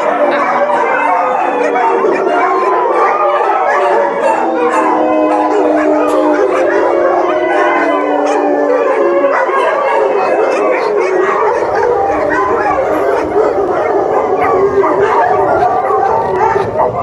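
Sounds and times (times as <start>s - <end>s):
dogs howling: 0.0s - 17.0s
dogs yipping and barking: 0.0s - 17.0s.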